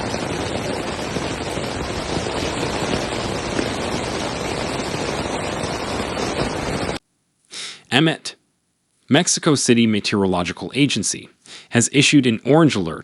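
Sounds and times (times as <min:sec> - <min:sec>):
water rushing: 0:00.0 - 0:07.0.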